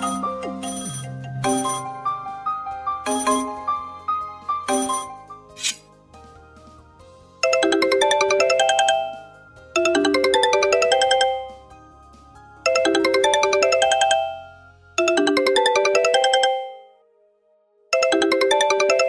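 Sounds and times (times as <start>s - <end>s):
phone ringtone melody: 0.0s - 2.4s, 3.0s - 3.7s, 4.7s - 5.2s, 7.4s - 11.9s, 12.6s - 17.0s, 18.0s - 19.0s.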